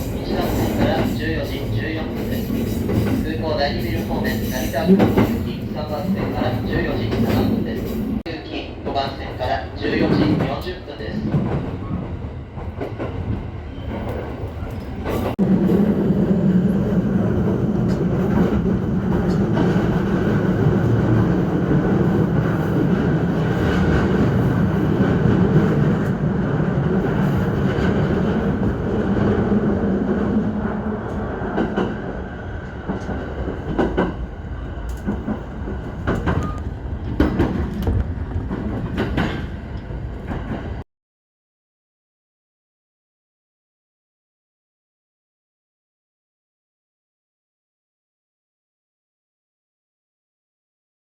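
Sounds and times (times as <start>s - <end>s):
train rumbling on rails: 0.0s - 40.9s.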